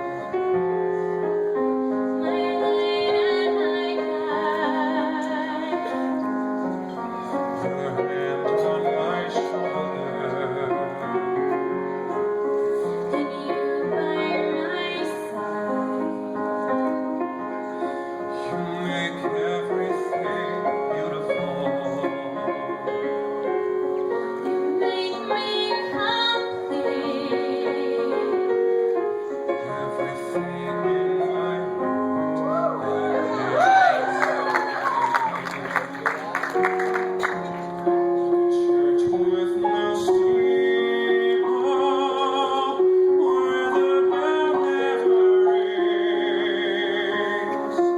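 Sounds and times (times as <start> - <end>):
piano accompaniment: 0.0 - 47.9
woman singing a slow ballad: 2.2 - 6.3, 13.1 - 15.8, 24.6 - 28.6.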